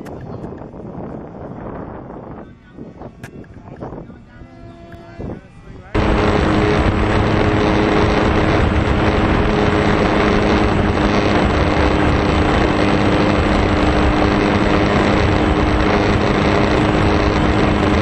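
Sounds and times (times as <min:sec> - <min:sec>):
electric motor hum: 0:03.3 - 0:18.0
wind rushing: 0:06.0 - 0:18.0.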